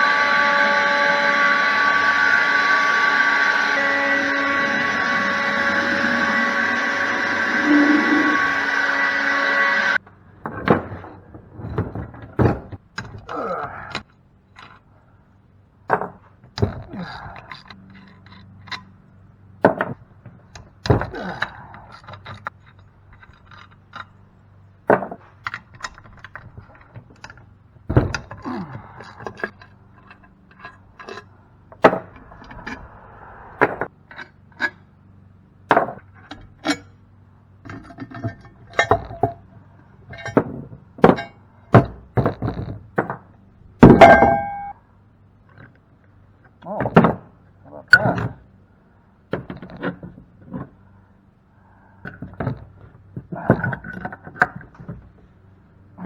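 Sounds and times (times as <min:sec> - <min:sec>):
metal pump parts clinking: 0:37.6 - 0:42.7, 0:43.8 - 0:44.8
ringing metal clank: 0:43.8 - 0:44.8.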